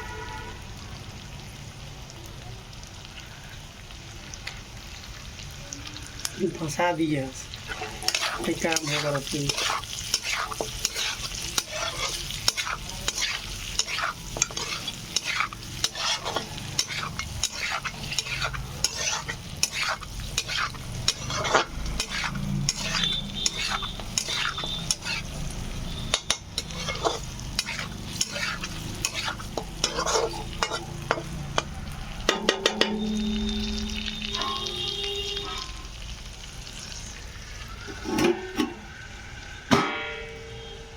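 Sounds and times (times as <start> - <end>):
meat sizzling in a pan: 0.0 - 39.7
spoon scraping a pan: 6.6 - 34.7, 37.8 - 39.0.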